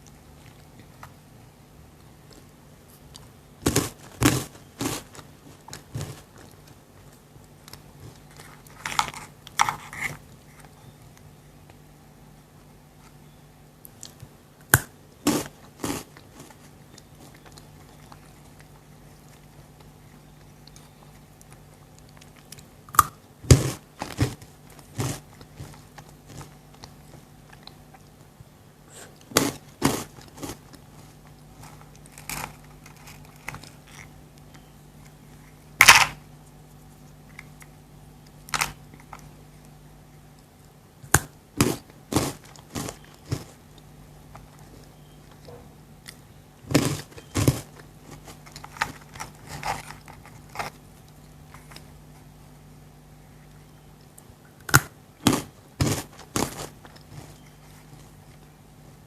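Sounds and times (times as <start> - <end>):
quiet chewing: 0.0 - 59.0
crunching bites into chocolate: 3.6 - 6.6, 13.9 - 19.9, 20.7 - 28.2, 46.0 - 52.0, 54.1 - 58.2.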